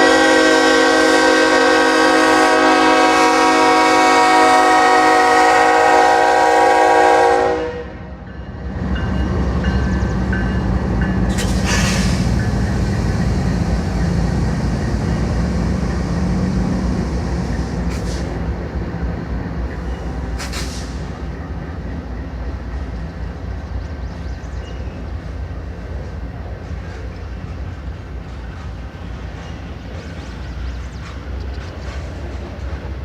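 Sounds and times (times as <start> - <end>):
train horn: 0.0 - 8.2
diesel locomotives rumbling: 0.0 - 33.0.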